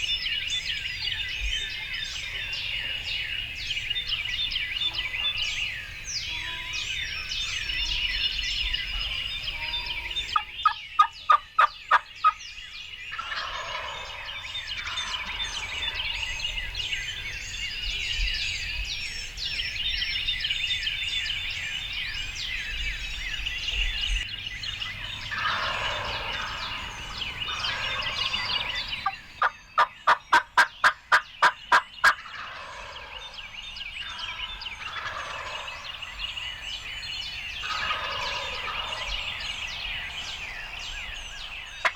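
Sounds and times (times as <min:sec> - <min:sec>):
songbirds chorus: 0:00.0 - 0:41.9
wild turkeys gobbling: 0:08.9 - 0:12.4, 0:13.1 - 0:16.8, 0:24.9 - 0:33.4, 0:34.0 - 0:36.2, 0:37.6 - 0:39.4.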